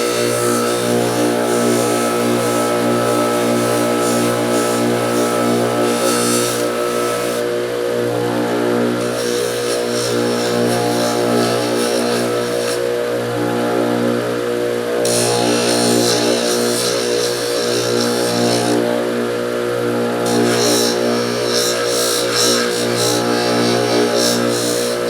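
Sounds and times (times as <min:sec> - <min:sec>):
bench grinder motor humming: 0:00.0 - 0:25.0
metal grinding hiss: 0:20.3 - 0:25.0.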